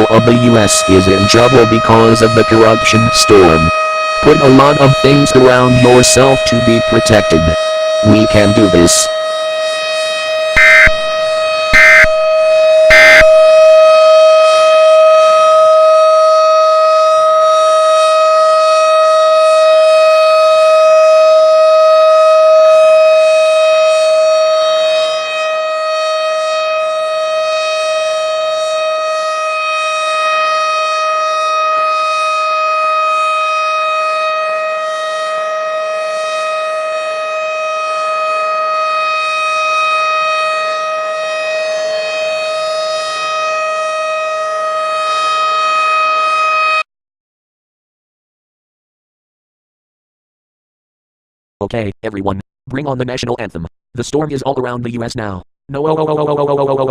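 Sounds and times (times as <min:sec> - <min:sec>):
siren steady pitch: 0:00.0 - 0:46.9
short loud bursts: 0:10.6 - 0:13.6.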